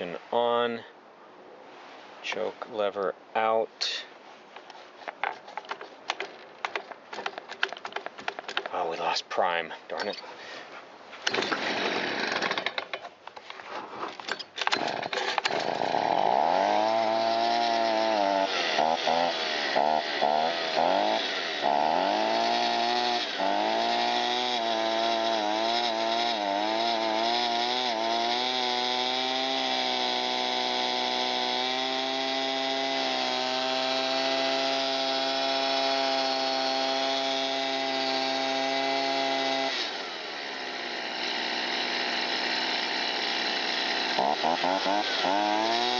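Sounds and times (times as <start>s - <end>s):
leaf blower engine running: 11.3s - 12.9s, 14.6s - 45.9s.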